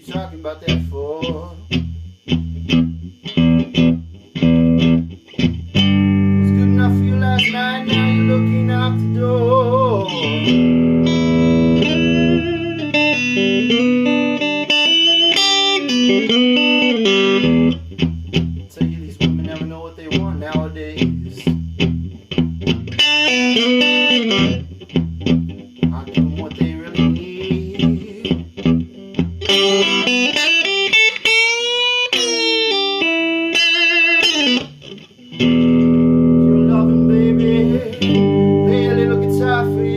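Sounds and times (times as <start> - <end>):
electric guitar blues fill: 0.0 - 39.9
person singing: 6.4 - 10.8, 11.5 - 13.3, 26.0 - 28.5, 36.4 - 39.9.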